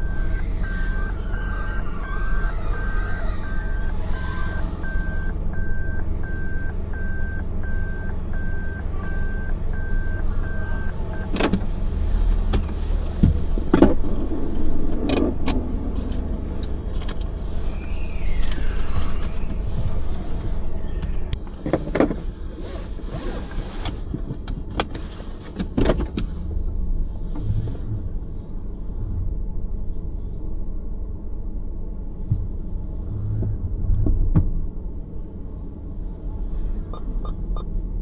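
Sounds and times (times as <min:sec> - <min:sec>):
short electronic beeps: 0:00.0 - 0:11.3, 0:36.9 - 0:37.7
car road and engine rumble: 0:00.0 - 0:38.0.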